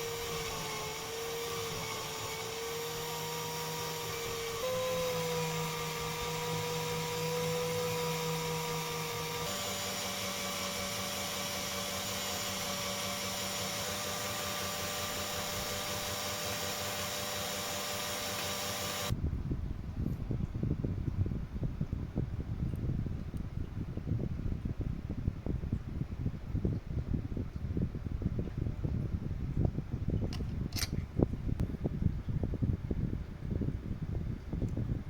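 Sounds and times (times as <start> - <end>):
small electric motor whining: 0.0 - 19.2.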